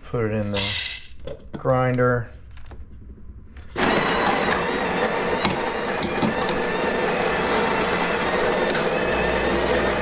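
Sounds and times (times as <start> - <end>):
electric coffee grinder whirring: 3.7 - 10.0.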